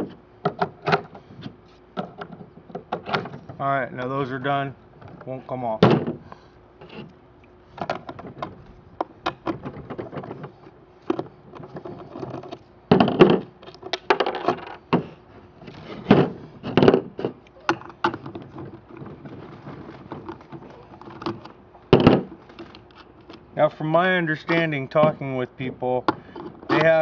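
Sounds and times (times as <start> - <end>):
skateboard parts clicking and knocking: 7.8 - 15.1.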